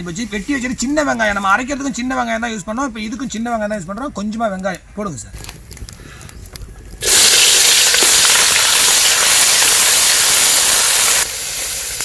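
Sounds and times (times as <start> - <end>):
shallots sizzling in hot oil: 7.0 - 12.0.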